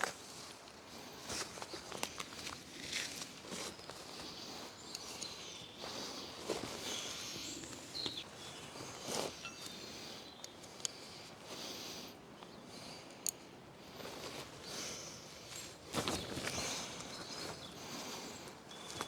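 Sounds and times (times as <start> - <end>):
rustling and handling noises: 14.0 - 19.0.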